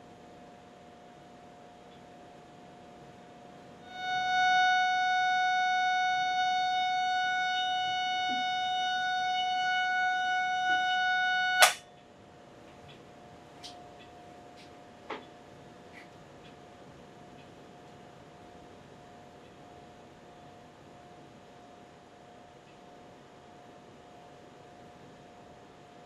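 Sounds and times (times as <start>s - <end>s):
faint steady tone: 3.8s - 11.6s
loud buzzy tone: 3.8s - 11.8s.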